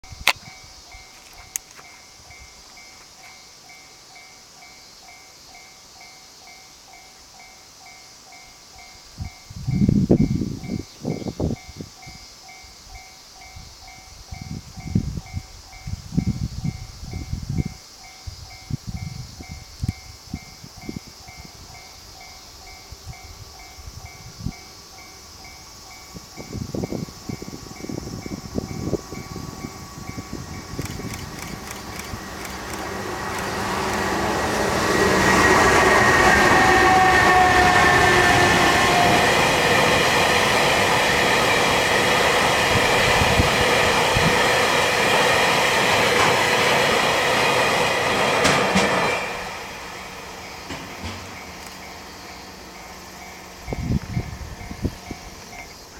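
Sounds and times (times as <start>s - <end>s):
freight train rumble: 0.0s - 55.9s
high wheel squeal: 27.3s - 40.1s.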